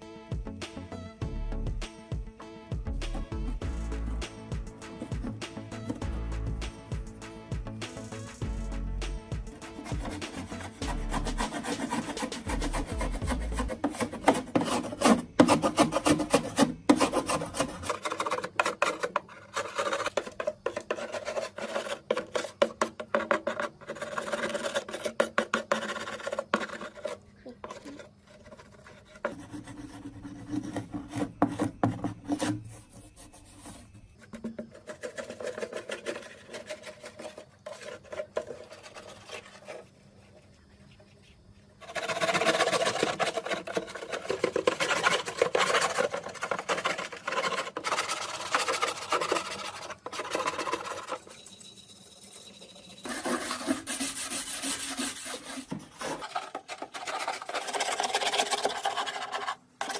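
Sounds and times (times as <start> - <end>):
abrasive scraping on hard surface: 9.5 - 51.5.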